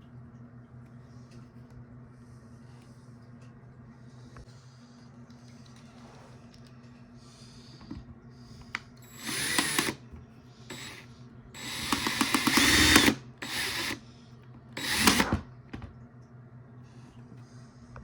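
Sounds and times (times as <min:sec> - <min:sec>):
power drill running: 0:09.0 - 0:10.0, 0:10.7 - 0:14.0, 0:14.8 - 0:15.5.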